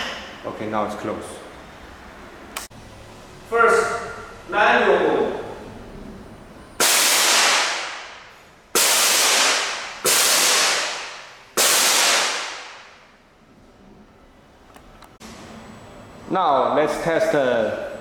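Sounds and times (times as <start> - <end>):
hissing blast of gas: 6.8 - 8.0, 8.8 - 12.6.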